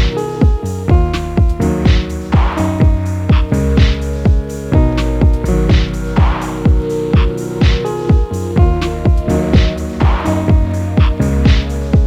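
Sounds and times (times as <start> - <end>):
electronic music with drum-machine beat: 0.0 - 12.0.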